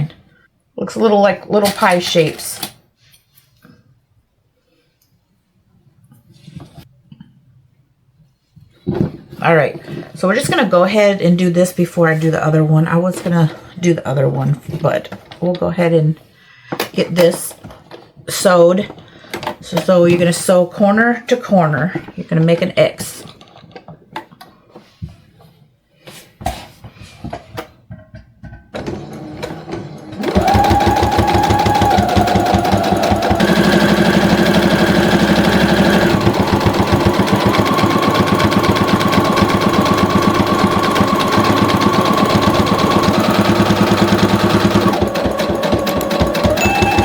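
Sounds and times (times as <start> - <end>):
sewing machine stitching: 28.8 - 47.0.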